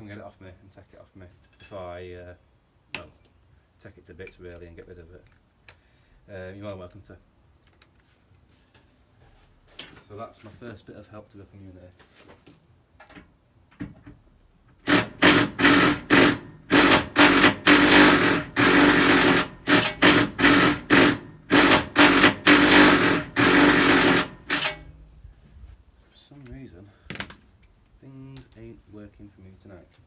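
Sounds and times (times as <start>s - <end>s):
power tool rattling bursts: 14.8s - 25.1s.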